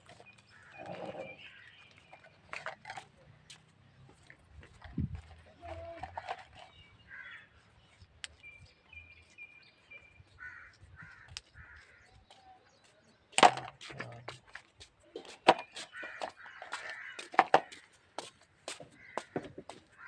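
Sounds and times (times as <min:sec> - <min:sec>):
crows cawing: 0:07.1 - 0:07.5, 0:10.4 - 0:12.2, 0:15.8 - 0:18.0, 0:18.7 - 0:20.0.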